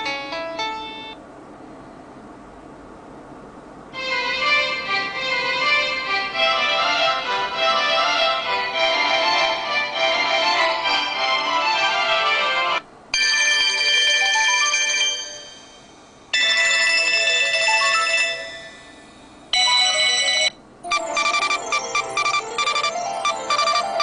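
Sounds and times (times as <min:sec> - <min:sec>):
electronic melodic ringtones: 0:13.2 - 0:15.7, 0:16.4 - 0:24.0
fast choppy pulsing ringtone: 0:13.2 - 0:15.7, 0:16.4 - 0:18.9, 0:19.6 - 0:24.0.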